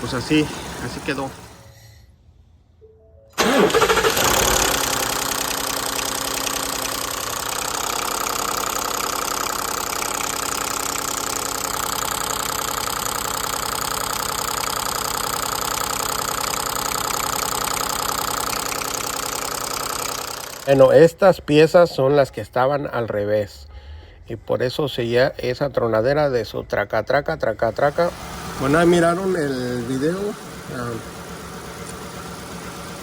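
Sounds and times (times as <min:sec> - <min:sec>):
truck engine idling: 0:00.0 - 0:01.8, 0:03.4 - 0:21.1, 0:27.6 - 0:33.0.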